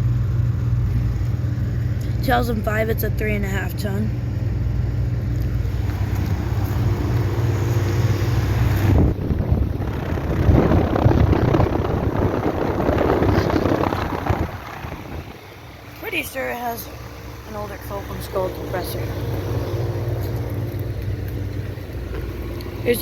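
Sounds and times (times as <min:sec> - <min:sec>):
air conditioner unit humming: 0:00.0 - 0:23.0
air rushing over microphone: 0:05.6 - 0:15.7.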